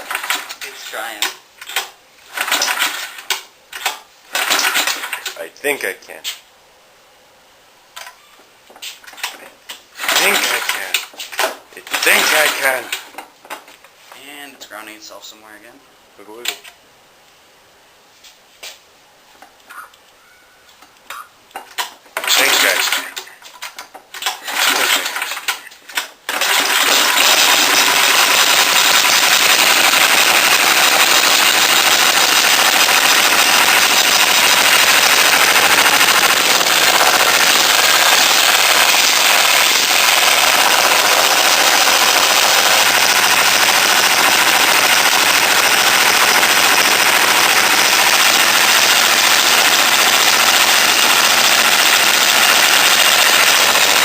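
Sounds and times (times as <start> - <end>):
go-kart engine starting and running: 0.0 - 5.4, 10.0 - 13.1, 22.2 - 23.3, 24.2 - 54.0.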